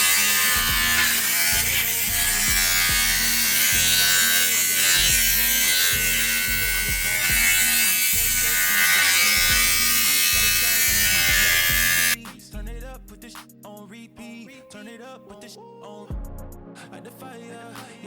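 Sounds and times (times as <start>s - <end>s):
steady high buzz: 0.0s - 12.2s
hip-hop music: 0.0s - 18.0s
vocals: 0.0s - 18.0s
sliding bass notes: 0.6s - 4.1s, 5.0s - 8.6s, 9.4s - 13.3s.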